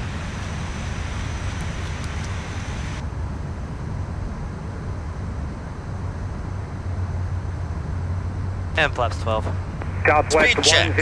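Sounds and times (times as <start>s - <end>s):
jet engine drone in cockpit: 0.0s - 6.1s, 8.8s - 11.0s.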